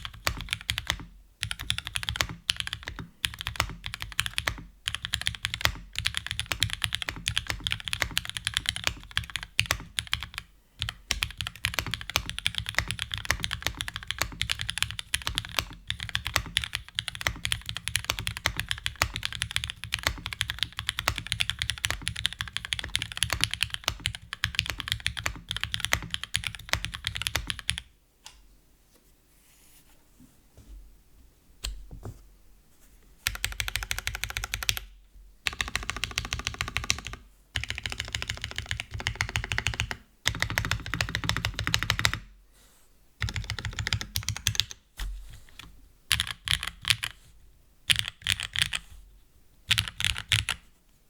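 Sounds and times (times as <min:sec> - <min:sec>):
fast mechanical keyboard typing: 0:00.0 - 0:27.9, 0:33.2 - 0:34.9, 0:35.5 - 0:42.2, 0:43.2 - 0:44.8, 0:46.1 - 0:47.2, 0:47.9 - 0:48.8, 0:49.7 - 0:50.6.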